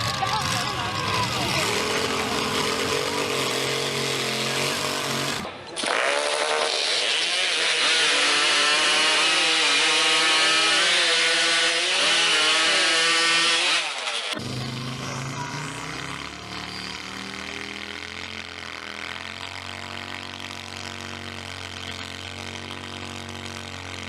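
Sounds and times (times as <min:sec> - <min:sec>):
another engine running: 0:00.0 - 0:06.8, 0:11.8 - 0:24.0
chainsaw running at high revs: 0:00.0 - 0:24.0.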